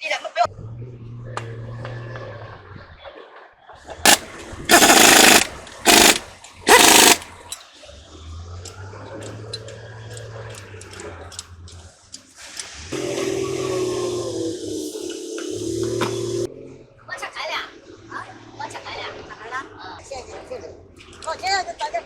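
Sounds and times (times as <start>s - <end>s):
impact wrench running: 4.1s - 7.2s.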